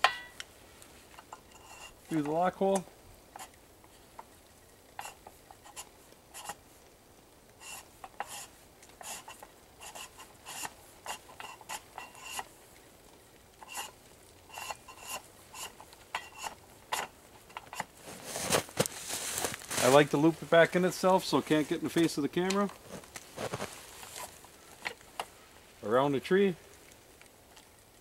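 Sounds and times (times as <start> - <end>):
cable scraping through metal holes: 5.0 - 6.6, 7.6 - 12.5, 13.6 - 18.7.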